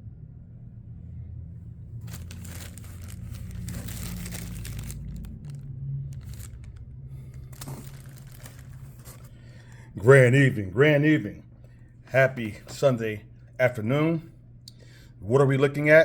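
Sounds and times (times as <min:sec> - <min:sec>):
steady low hum: 0:00.0 - 0:16.0
rustling and crinkling: 0:02.0 - 0:09.8.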